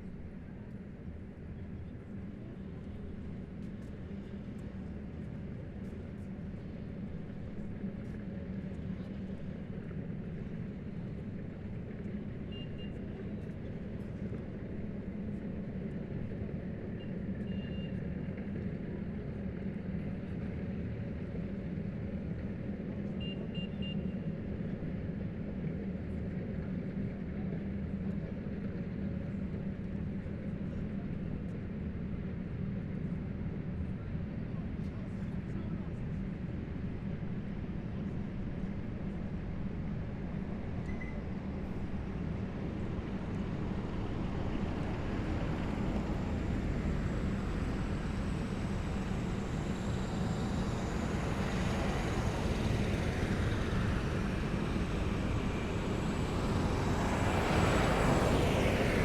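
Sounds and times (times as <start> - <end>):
heavy vehicle engines droning: 0.1 - 59.0.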